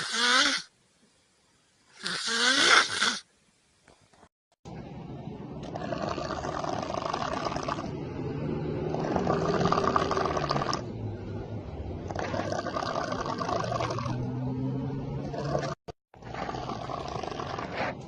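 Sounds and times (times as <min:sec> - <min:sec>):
person snoring growling: 0:05.7 - 0:08.0, 0:08.8 - 0:10.8, 0:12.1 - 0:14.4, 0:15.2 - 0:17.9.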